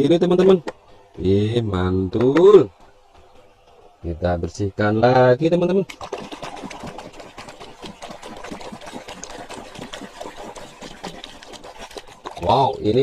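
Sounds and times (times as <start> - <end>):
toy vehicle being scrubbed: 6.1 - 13.0.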